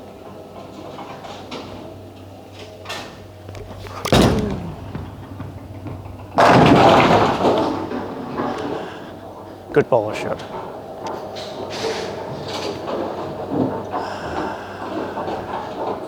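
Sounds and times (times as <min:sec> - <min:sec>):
bowling pins clattering: 0:03.4 - 0:08.9
bowling ball thud on lane: 0:03.5 - 0:05.6.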